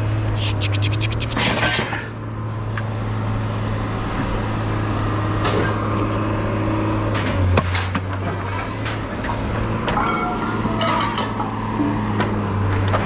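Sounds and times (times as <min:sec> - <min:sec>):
engine droning: 0:00.0 - 0:13.0
metal knocks and clinks: 0:09.8 - 0:11.6.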